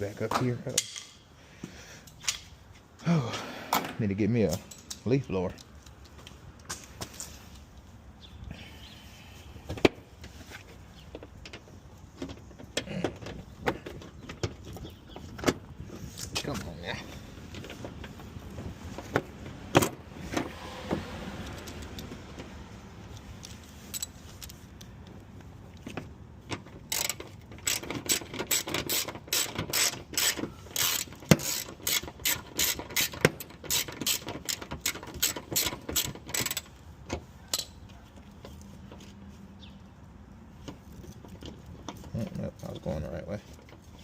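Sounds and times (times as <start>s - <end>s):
ratchet wrench clicking: 26.8s - 36.7s.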